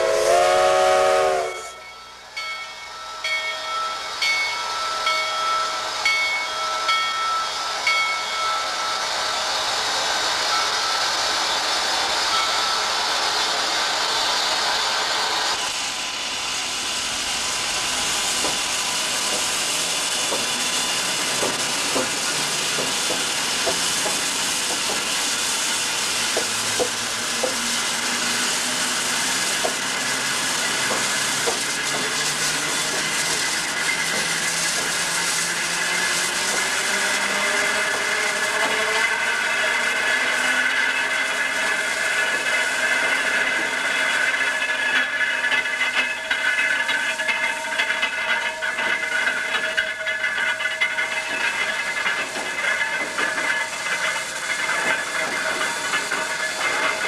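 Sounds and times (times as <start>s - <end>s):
train rushing noise: 0.0s - 57.0s
wheels squealing: 18.0s - 57.0s.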